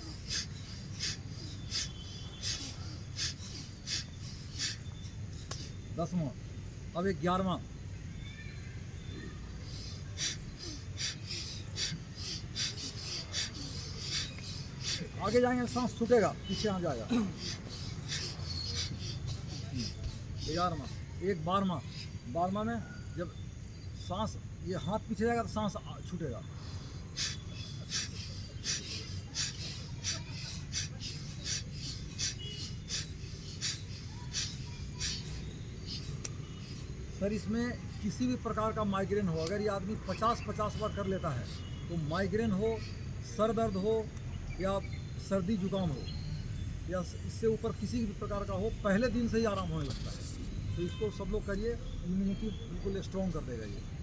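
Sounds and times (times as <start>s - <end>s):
rapid forceful nose breathing: 0.0s - 5.9s, 9.6s - 22.3s, 26.4s - 38.8s, 40.8s - 41.8s
steady low hum: 0.0s - 7.0s, 9.0s - 22.3s, 25.5s - 41.8s.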